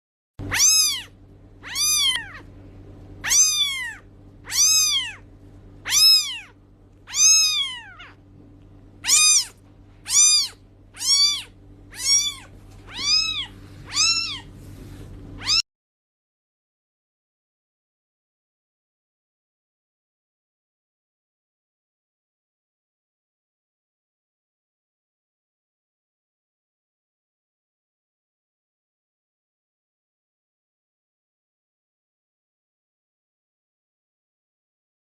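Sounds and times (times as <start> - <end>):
kitten meowing: 0.4 - 2.5, 3.2 - 8.2, 9.0 - 14.5, 15.4 - 15.6
faint low hum: 0.4 - 15.6.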